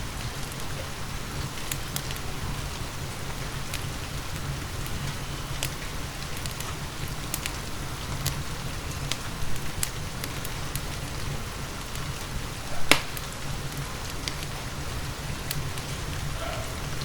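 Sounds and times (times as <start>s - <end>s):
steady rain: 0.0s - 17.0s
wood fire crackling and popping: 0.0s - 17.0s.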